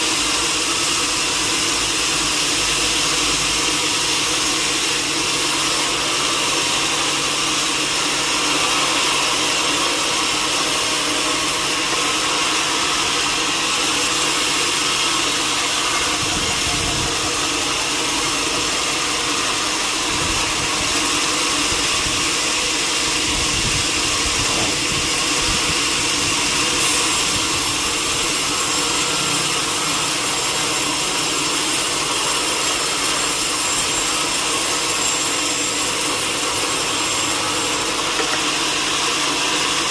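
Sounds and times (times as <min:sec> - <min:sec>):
sawmill saw whining: 0:00.0 - 0:39.9.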